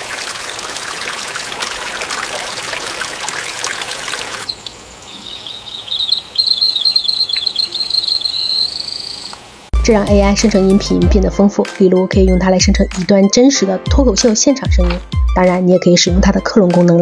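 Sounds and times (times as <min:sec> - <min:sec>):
high chirping trill: 0:04.5 - 0:09.4.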